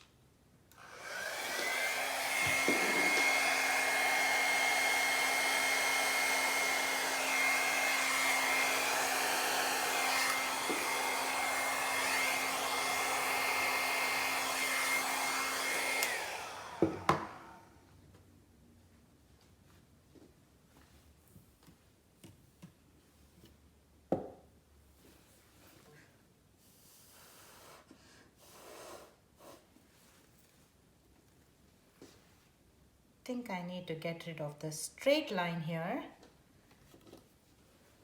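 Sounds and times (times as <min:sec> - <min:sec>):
hair dryer running: 0:00.7 - 0:17.8.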